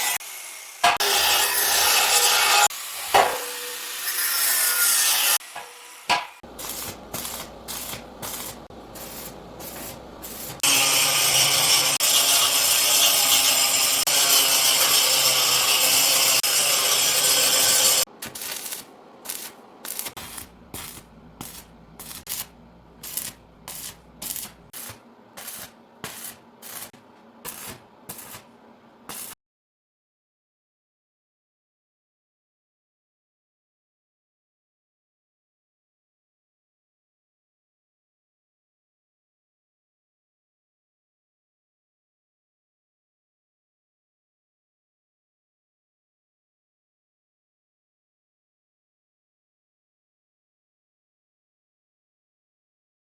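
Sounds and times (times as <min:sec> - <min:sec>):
tool scraping wood: 0:05.2 - 0:15.2, 0:15.8 - 0:29.4.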